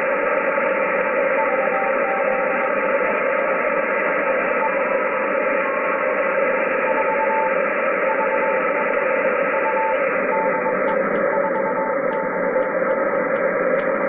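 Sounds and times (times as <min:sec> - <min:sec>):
radio static hiss: 0:00.0 - 0:14.0
faint morse code tone: 0:01.4 - 0:02.8, 0:06.8 - 0:08.6, 0:09.5 - 0:12.9.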